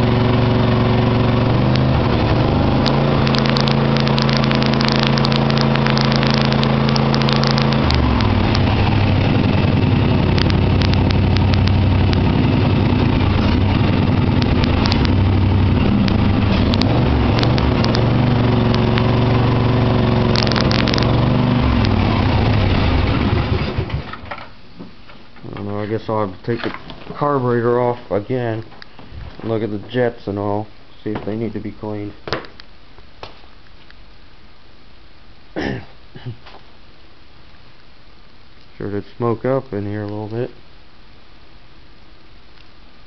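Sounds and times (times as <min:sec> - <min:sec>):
small lawnmower engine running: 0:00.0 - 0:24.3
engine pops and crackles: 0:00.1 - 0:24.6.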